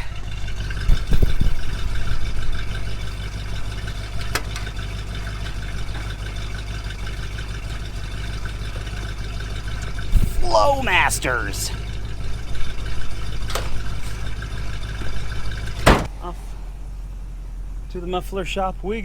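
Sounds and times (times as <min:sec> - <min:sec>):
car engine idling: 0:00.0 - 0:19.0
thump: 0:15.8 - 0:16.1.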